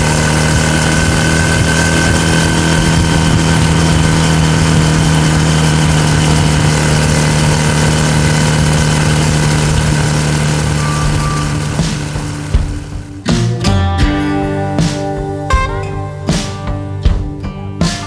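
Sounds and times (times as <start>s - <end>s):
motor humming with hiss: 0.0s - 13.2s.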